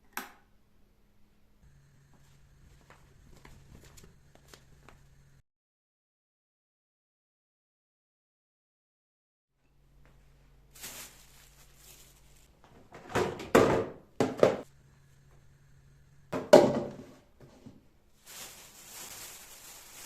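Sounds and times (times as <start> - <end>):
soft rustling: 10.7 - 12.5, 18.2 - 20.0
household items thunking and knocking: 12.7 - 14.7, 16.4 - 17.8.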